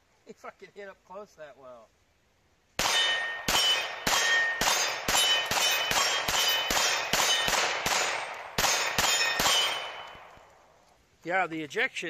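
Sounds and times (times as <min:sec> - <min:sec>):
pistol shots in rapid string: 0:02.8 - 0:10.3
steel targets ringing: 0:02.8 - 0:10.3.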